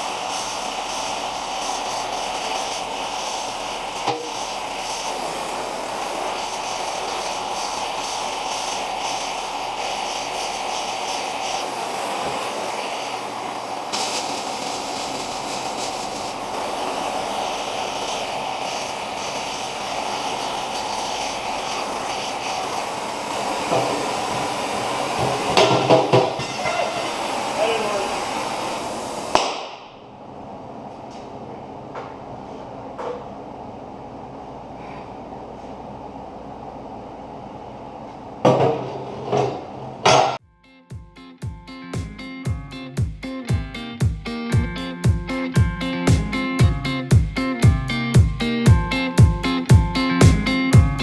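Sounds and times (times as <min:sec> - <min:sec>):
gas torch flame hissing: 0:00.0 - 0:29.9, 0:41.9 - 0:51.0.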